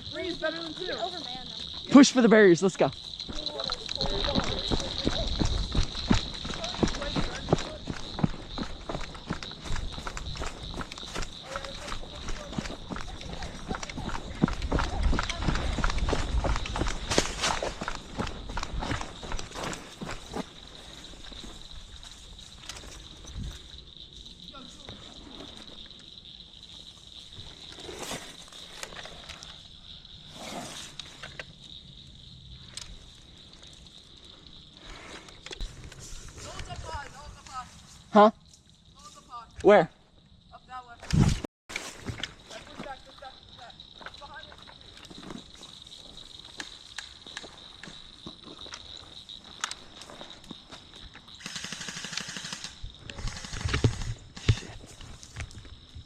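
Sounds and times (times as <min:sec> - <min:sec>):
crickets chirping: 0:00.0 - 0:56.0
sharp clicks: 0:51.4 - 0:54.7.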